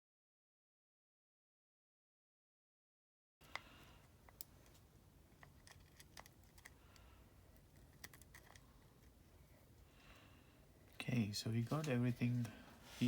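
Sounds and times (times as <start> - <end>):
low room hiss: 3.4 - 13.0.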